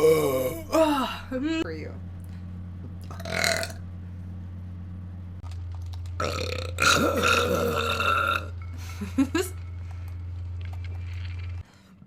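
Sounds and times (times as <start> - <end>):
woman burping: 0.0 - 1.3, 6.2 - 8.5
steady low hum: 0.0 - 12.0.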